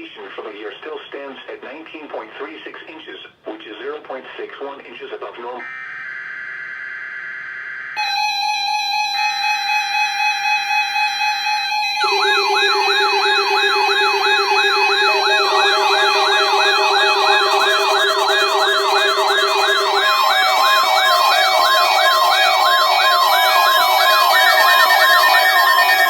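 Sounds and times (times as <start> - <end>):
sweeping siren-like alarm tone: 5.6 - 26.0
steady alarm tones: 11.8 - 26.0.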